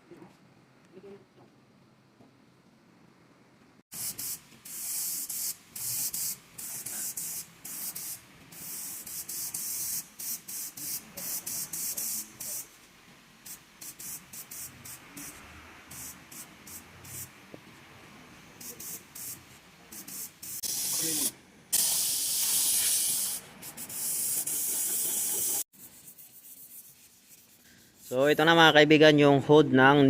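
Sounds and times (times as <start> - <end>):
compressed air hissing bursts: 3.9 - 12.7, 13.4 - 17.4, 18.6 - 25.7.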